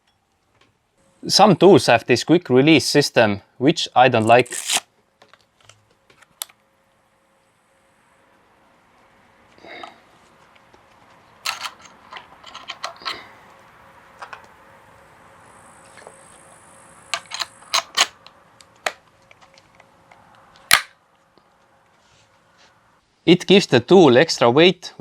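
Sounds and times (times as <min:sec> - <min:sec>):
blade clamp clicks and snaps: 0:04.3 - 0:04.8.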